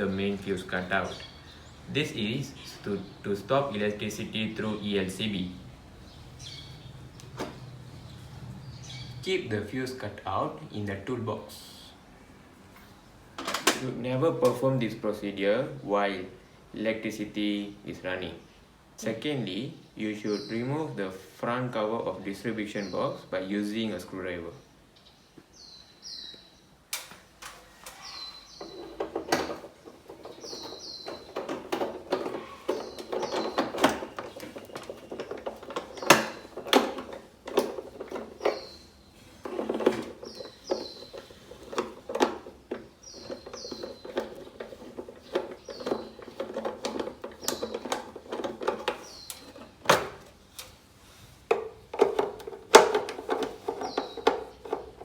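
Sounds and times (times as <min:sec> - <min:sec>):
bird chirping: 0:00.0 - 0:11.0, 0:24.6 - 0:26.8, 0:27.6 - 0:50.7, 0:51.6 - 0:55.0.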